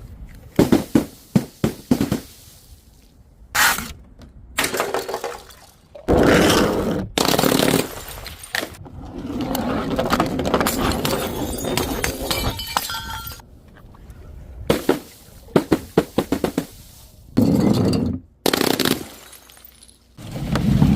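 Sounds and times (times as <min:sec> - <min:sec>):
glass bottles shattering: 0:10.6 - 0:13.4, 0:18.8 - 0:20.2
sharp glass clinks: 0:11.2 - 0:13.4.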